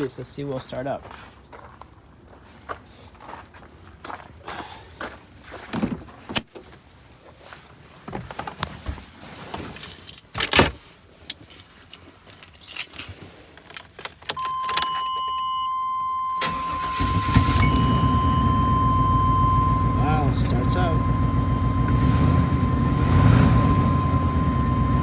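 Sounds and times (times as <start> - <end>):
keys jangling: 9.7 - 10.6, 11.6 - 15.2
steady electronic beep tone: 14.4 - 25.0
car engine cranking and starting: 16.3 - 25.0.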